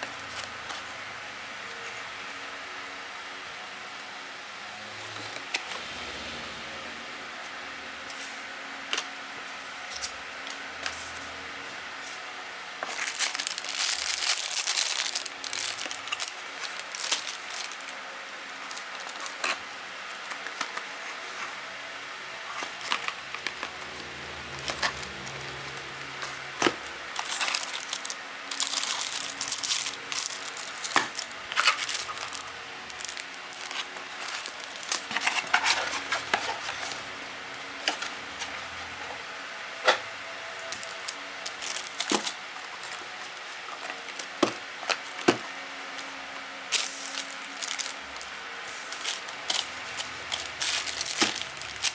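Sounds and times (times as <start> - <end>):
packaging crinkling: 12.8 - 19.6, 22.5 - 39.0, 40.6 - 51.9
plastic parts tapping and clicking: 43.8 - 46.0, 48.9 - 51.9.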